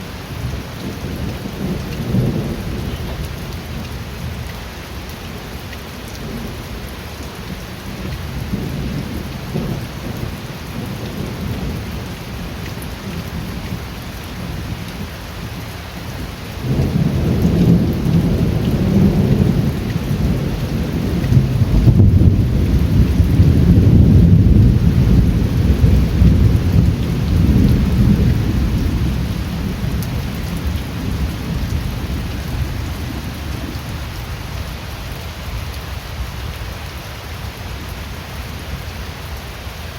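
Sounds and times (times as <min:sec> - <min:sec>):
rolling thunder: 0:00.0 - 0:03.7, 0:16.6 - 0:34.0
steady rain: 0:00.0 - 0:39.9.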